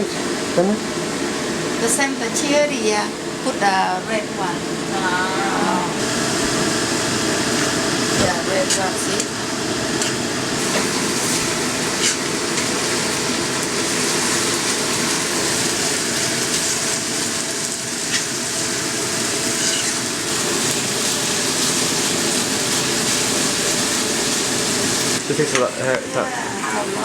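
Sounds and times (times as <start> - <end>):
meat sizzling in a pan: 6.0 - 26.6.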